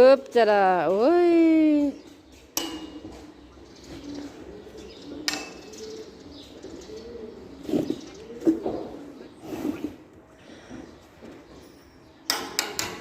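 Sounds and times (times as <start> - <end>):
low bird calls: 1.8 - 12.2.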